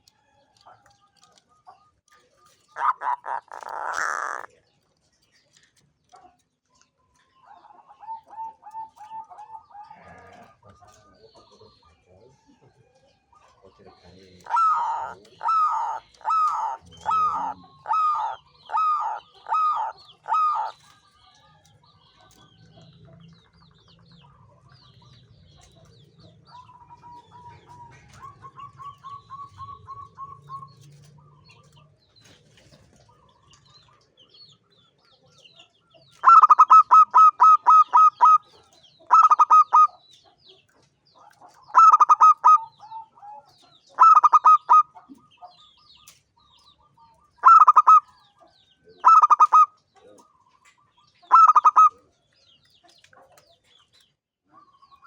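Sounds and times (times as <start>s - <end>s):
dove cooing: 2.7s - 4.5s, 7.6s - 11.6s, 14.1s - 21.0s, 26.5s - 31.7s, 36.2s - 38.5s, 39.1s - 40.0s, 41.7s - 45.3s, 47.4s - 48.2s, 49.0s - 50.3s, 51.3s - 52.0s.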